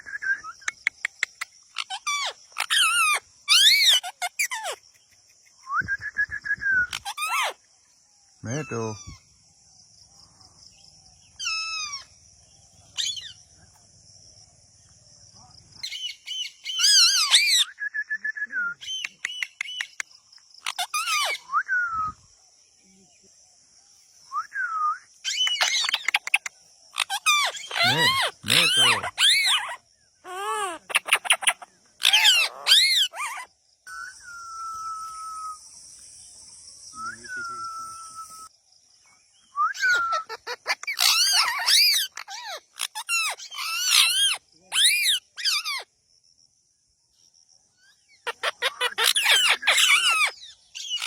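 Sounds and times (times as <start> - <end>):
parakeet calling: 1.2 - 4.8, 11.4 - 12.0, 15.9 - 17.6, 20.6 - 21.5, 25.2 - 34.2, 39.8 - 45.8, 48.2 - 51.0
parrot squawking: 1.8 - 4.8, 27.0 - 33.4, 39.8 - 45.8, 48.3 - 51.0
rattling bird trill: 27.0 - 29.8.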